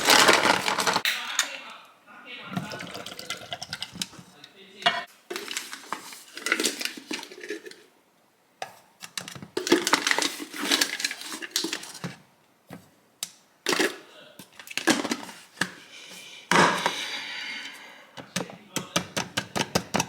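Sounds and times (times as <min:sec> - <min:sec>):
dishes and utensils clattering: 0:02.5 - 0:07.9.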